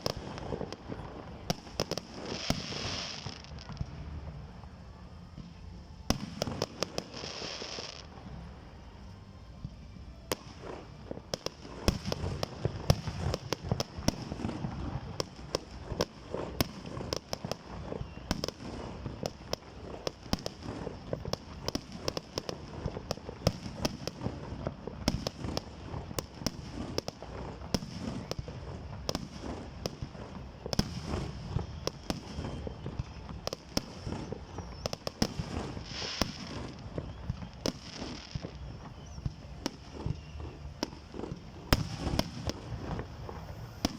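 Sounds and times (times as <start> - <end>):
deep fireworks booms: 0.0 - 8.6, 9.6 - 43.9
fireworks bangs and crackles: 0.0 - 43.9.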